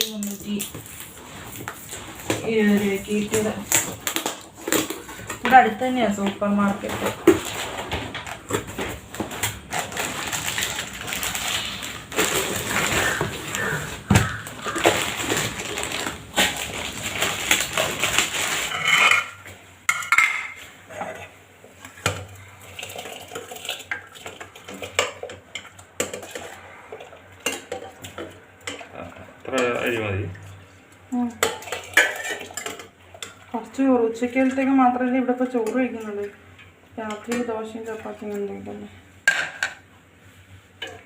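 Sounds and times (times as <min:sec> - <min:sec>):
pots and dishes clattering: 0:01.6 - 0:21.3, 0:22.0 - 0:30.5, 0:31.4 - 0:33.5, 0:39.2 - 0:39.9, 0:40.8 - 0:41.0.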